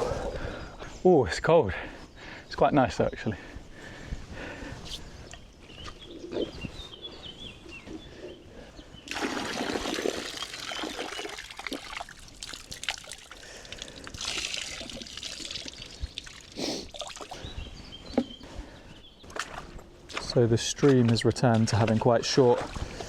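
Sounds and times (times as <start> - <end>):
small bird chirping: 4.8 - 9.1
water splashing around wading legs: 9.1 - 17.5, 19.3 - 23.0.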